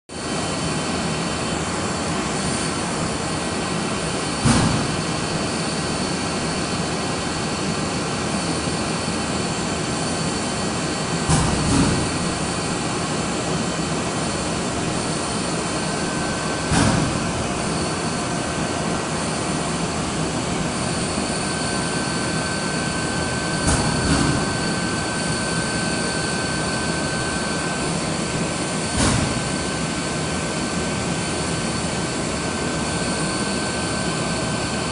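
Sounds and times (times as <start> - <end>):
laser drilling machine hum: 0.2 - 34.9
machine thump: 4.4 - 5.3, 11.3 - 12.4, 15.8 - 18.5, 23.5 - 25.0, 28.8 - 29.7.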